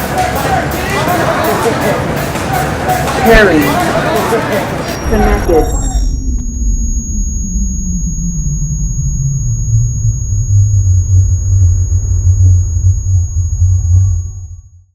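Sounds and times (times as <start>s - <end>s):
faint high whine: 4.8s - 14.9s
low rumbling drone: 4.8s - 14.9s.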